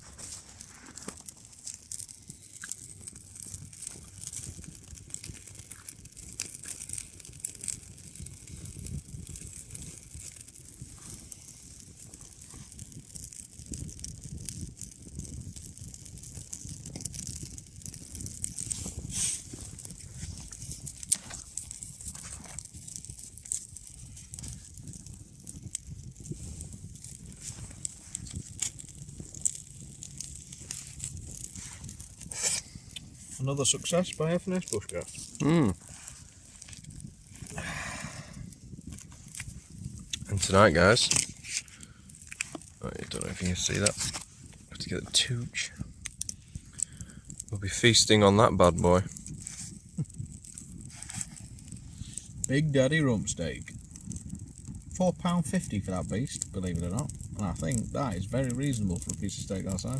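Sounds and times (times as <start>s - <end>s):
rustling with crackles: 0.0s - 59.9s
faint low rumble: 16.6s - 52.5s.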